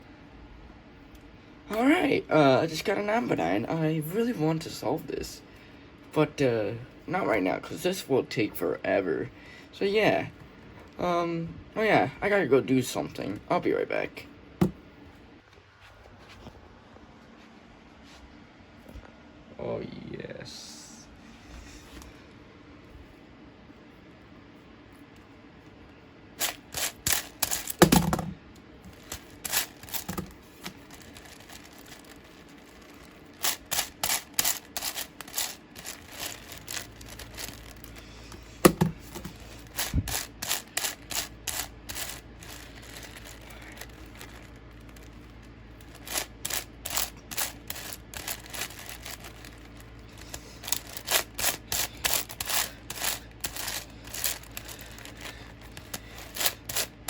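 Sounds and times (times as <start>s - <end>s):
handling knocks: 14.6s - 14.8s, 26.8s - 28.4s, 38.4s - 44.4s.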